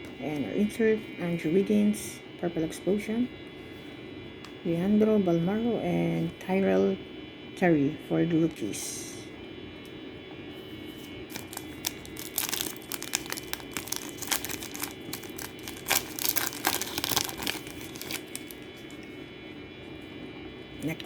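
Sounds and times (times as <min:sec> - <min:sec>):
wrapper tearing and crinkling: 0:11.3 - 0:19.0.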